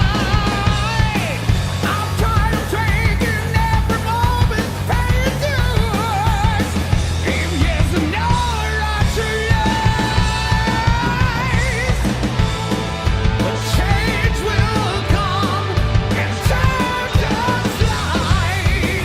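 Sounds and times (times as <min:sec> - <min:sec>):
man singing with vibrato: 0:00.0 - 0:12.2, 0:13.4 - 0:19.0
bass guitar: 0:00.0 - 0:19.0
distorted electric guitars: 0:00.0 - 0:19.0
drums: 0:00.0 - 0:19.0.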